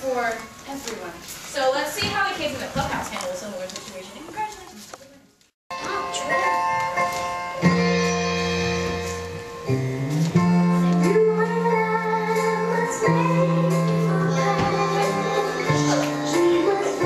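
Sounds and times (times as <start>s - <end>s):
bass line: 7.7s - 12.6s
singing over chords: 9.9s - 17.0s.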